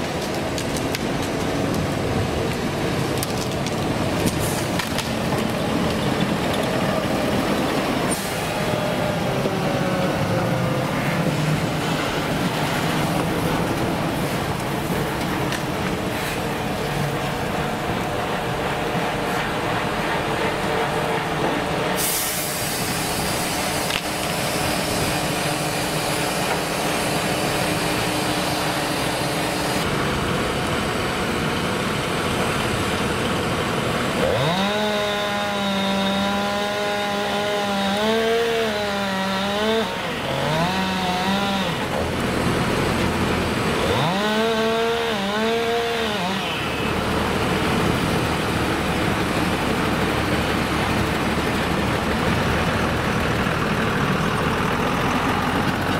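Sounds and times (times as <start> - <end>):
wood chipper running: 0.0 - 55.9
loud machine whine: 5.3 - 32.0.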